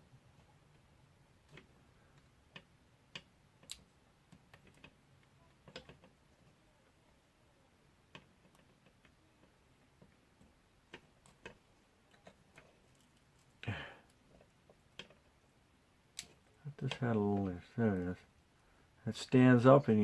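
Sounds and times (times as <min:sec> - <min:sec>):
small plastic parts clicking: 0:01.4 - 0:06.6, 0:08.0 - 0:15.4.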